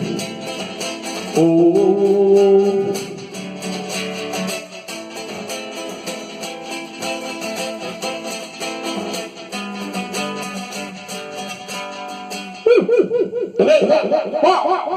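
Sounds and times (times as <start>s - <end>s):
guitar-led instrumental music: 0.0s - 14.9s
person laughing: 12.6s - 14.9s.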